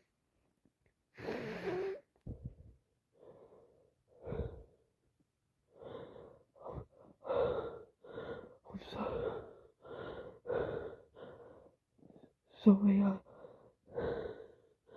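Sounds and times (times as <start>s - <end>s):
woman gasping wheezy breaths: 1.2s - 2.1s.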